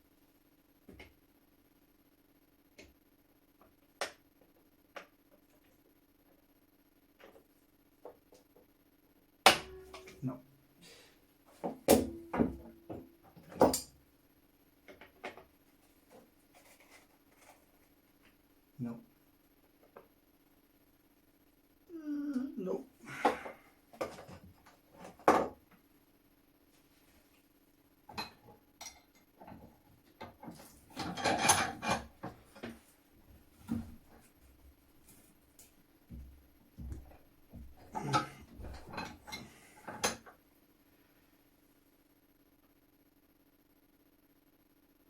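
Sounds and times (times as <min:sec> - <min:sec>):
metal tools scraping and clattering: 0:31.0 - 0:32.1.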